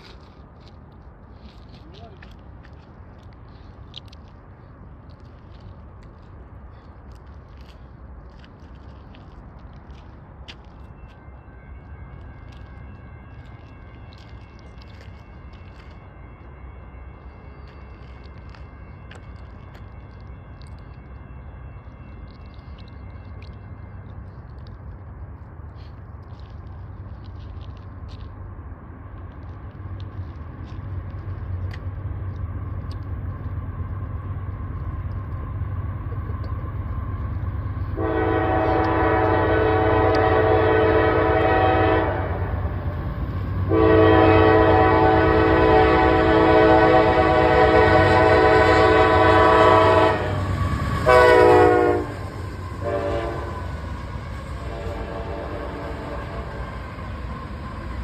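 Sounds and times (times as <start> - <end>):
diesel train rumble: 0.0 - 58.0
locomotive air horn blasts: 38.0 - 42.8, 43.6 - 53.9, 54.5 - 56.7.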